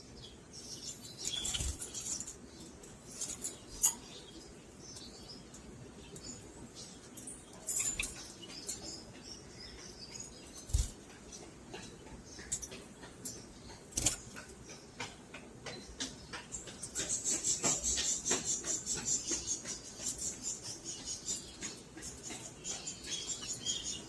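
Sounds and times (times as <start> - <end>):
lovebirds chirping: 0.0 - 24.0
wing flutters: 1.1 - 2.4, 10.5 - 11.8.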